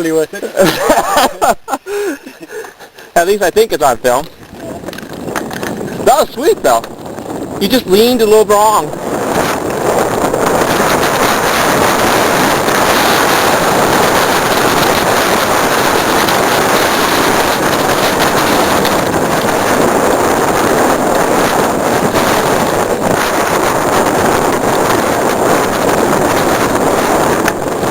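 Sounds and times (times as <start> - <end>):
wind rushing over microphone: 0.0 - 27.9
bike knocks and rattles: 4.3 - 6.1, 9.3 - 27.9.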